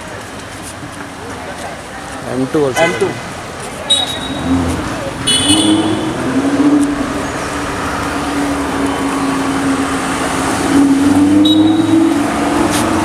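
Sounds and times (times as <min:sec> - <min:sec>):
street traffic noise: 0:00.0 - 0:13.0
short high beep: 0:03.9 - 0:04.5, 0:05.3 - 0:06.2
car engine running: 0:04.2 - 0:11.6.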